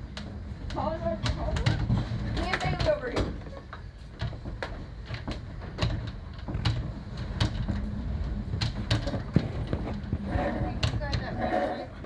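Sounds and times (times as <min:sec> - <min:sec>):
strong wind rumbling: 0:06.5 - 0:12.0.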